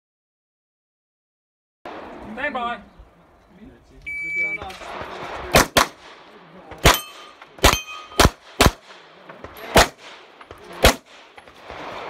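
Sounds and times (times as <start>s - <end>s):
pistol shots: 4.5s - 12.0s
steel targets ringing: 6.8s - 8.4s.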